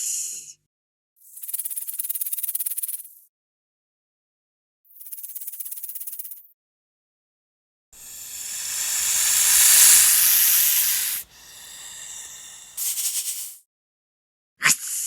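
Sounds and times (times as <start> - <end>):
snake hissing: 8.0 - 13.6.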